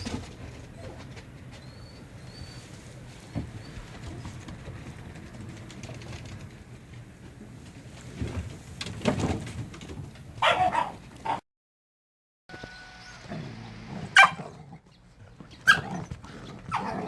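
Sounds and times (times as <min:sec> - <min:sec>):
high-pitched dog yelp: 0:10.4 - 0:11.4, 0:14.2 - 0:14.5, 0:15.6 - 0:16.1, 0:16.7 - 0:17.0.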